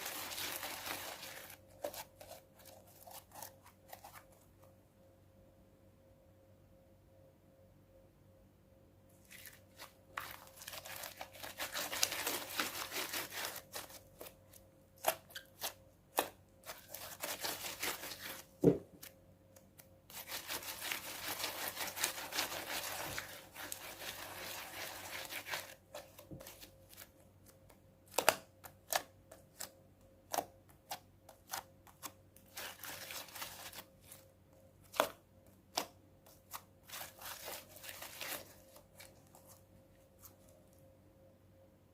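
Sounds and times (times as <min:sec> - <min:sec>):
slime crackling: 0:09.3 - 0:14.3, 0:20.1 - 0:26.6.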